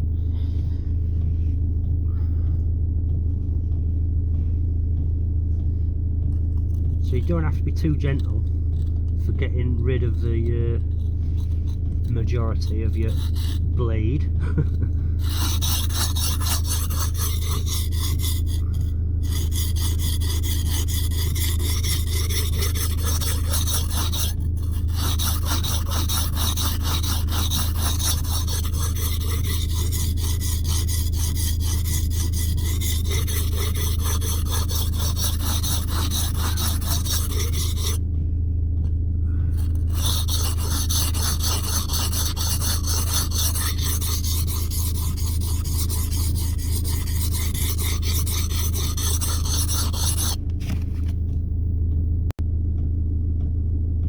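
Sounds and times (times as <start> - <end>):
steady low hum: 0.0 - 54.0
blade rasping on whetstone: 10.0 - 14.1, 15.2 - 38.0, 39.6 - 50.4.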